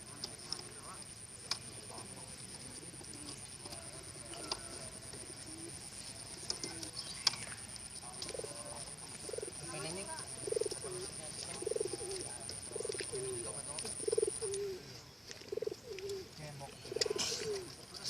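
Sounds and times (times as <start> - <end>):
pigeons cooing: 8.2 - 17.8.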